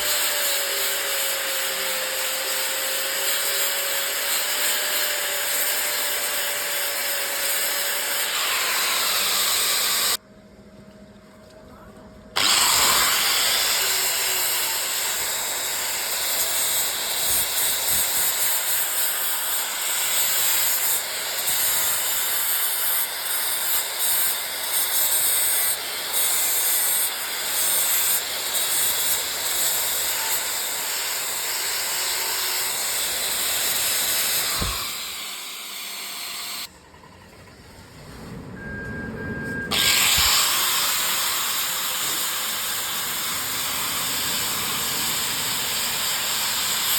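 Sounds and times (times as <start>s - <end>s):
electric arc welding hiss: 12.6s - 19.2s.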